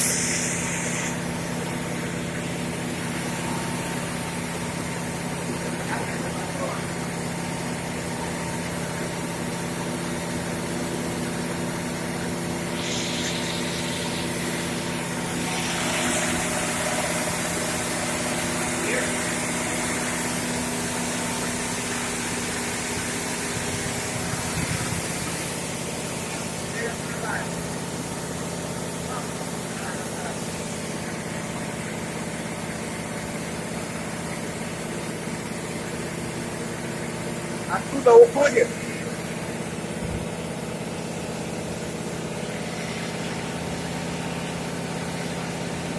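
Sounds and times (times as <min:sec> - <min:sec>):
hissing rush of water: 0:00.0 - 0:01.5, 0:12.7 - 0:26.8
pump engine running: 0:00.0 - 0:45.9.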